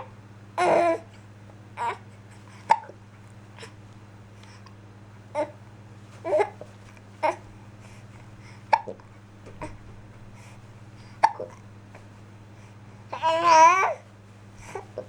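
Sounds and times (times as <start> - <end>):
baby hiccuping: 8.7 - 9.0, 11.2 - 11.6.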